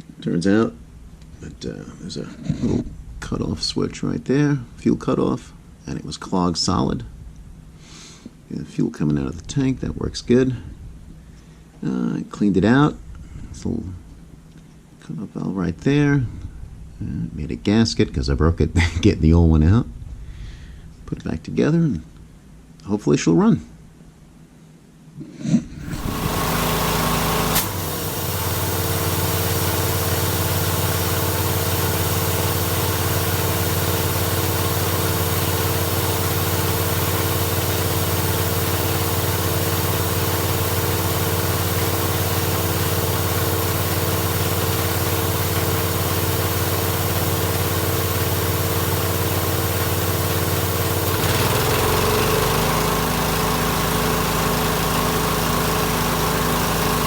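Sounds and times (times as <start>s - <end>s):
compressor pump running: 25.8s - 57.0s
small gas engine running: 25.8s - 57.0s.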